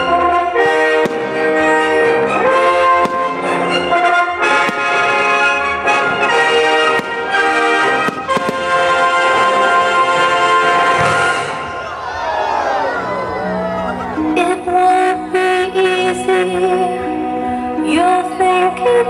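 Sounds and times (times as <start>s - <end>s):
brass band playing: 0.0s - 11.9s
sharp bangs: 1.0s - 11.8s.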